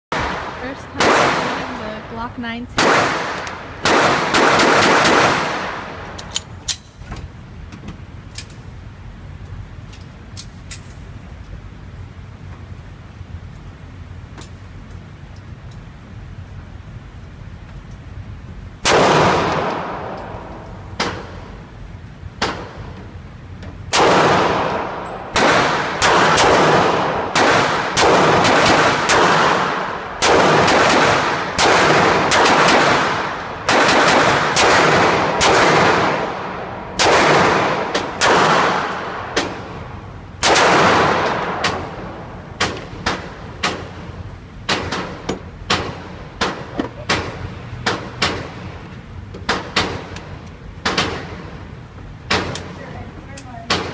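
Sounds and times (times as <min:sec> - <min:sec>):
pistol shots with echo: 0:00.1 - 0:01.8, 0:02.8 - 0:06.1, 0:18.8 - 0:21.6, 0:23.9 - 0:48.6.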